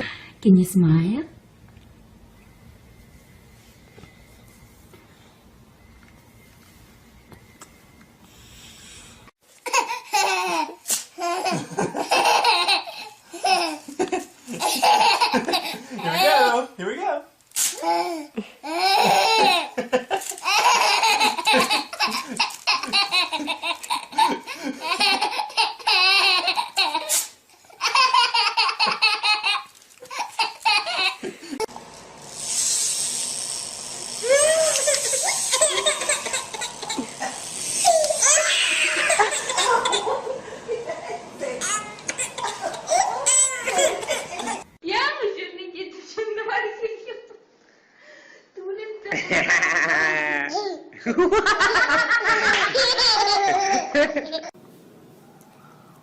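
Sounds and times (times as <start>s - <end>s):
faint background noise: 0.0s - 31.7s, 37.8s - 56.0s
child laughing: 9.6s - 16.6s, 17.8s - 31.7s, 34.2s - 44.7s, 49.1s - 54.6s
steady hiss: 29.0s - 41.6s
young child laughing: 34.2s - 40.3s, 41.4s - 44.7s, 52.2s - 54.6s.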